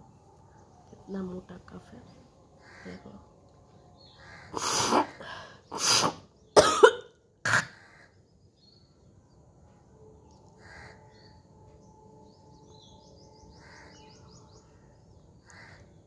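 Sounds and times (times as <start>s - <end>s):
woman coughing up phlegm: 5.8s - 7.8s.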